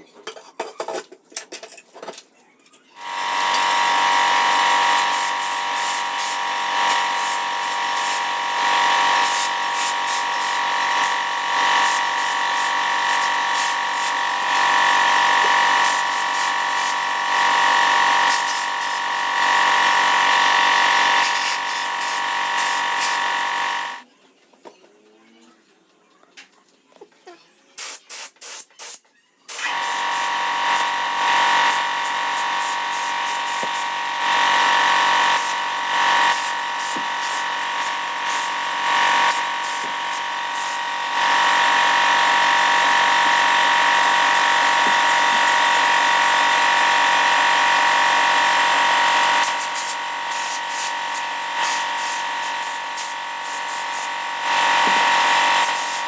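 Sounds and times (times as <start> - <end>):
power tool motor whining: 3.0 - 24.0, 29.6 - 56.0.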